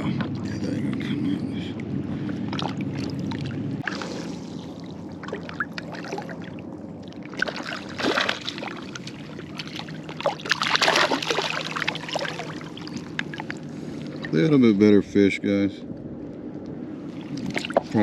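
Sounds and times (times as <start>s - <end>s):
fish splashing in water: 2.5s - 14.2s.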